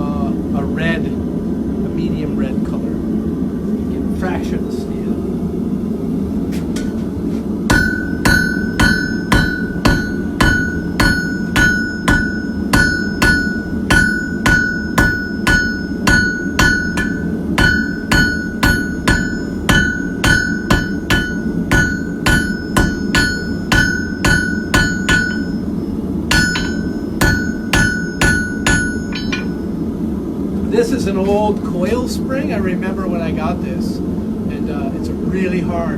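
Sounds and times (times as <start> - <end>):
hammer ringing on anvil: 7.7 - 29.7.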